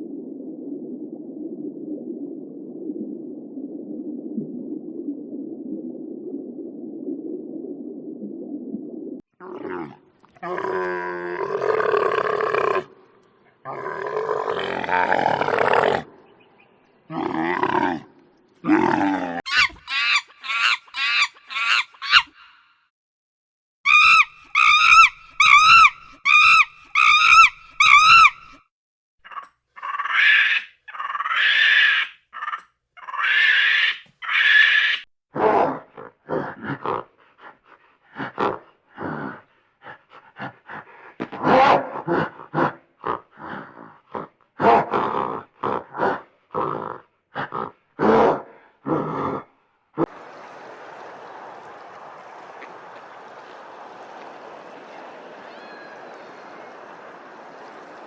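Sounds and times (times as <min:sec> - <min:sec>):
harsh animal call: 0:18.7 - 0:22.7, 0:23.9 - 0:28.6, 0:29.2 - 0:35.1
longer animal calls: 0:18.7 - 0:22.7, 0:23.9 - 0:28.6, 0:29.2 - 0:35.0
wavering animal calls: 0:19.5 - 0:22.6, 0:23.9 - 0:28.6.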